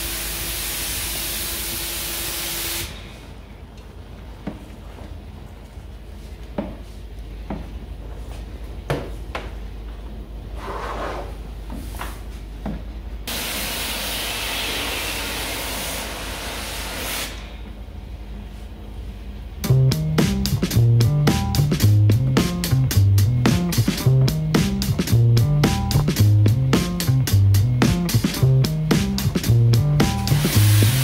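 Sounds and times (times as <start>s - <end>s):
pressure washer spraying hiss: 0.0s - 3.0s, 13.3s - 17.4s, 30.0s - 31.0s.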